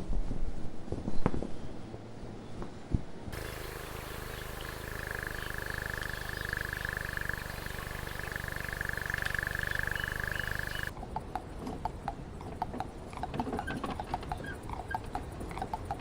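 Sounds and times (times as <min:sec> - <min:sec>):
high whine: 0:03.4 - 0:10.9
pulsing low drone: 0:03.4 - 0:10.9.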